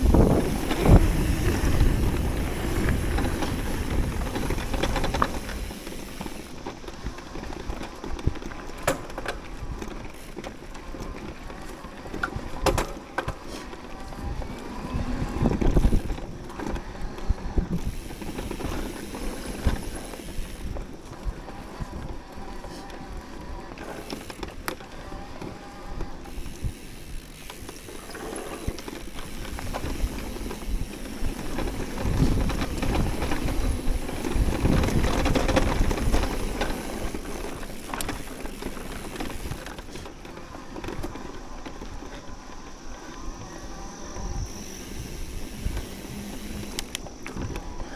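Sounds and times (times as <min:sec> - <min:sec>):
wind on microphone: 0:00.0 - 0:05.6, 0:14.0 - 0:23.7, 0:28.1 - 0:38.2, 0:42.1 - 0:47.9
tyres rumbling on dirt: 0:00.0 - 0:42.7
bike rattling over bumps: 0:00.0 - 0:47.9.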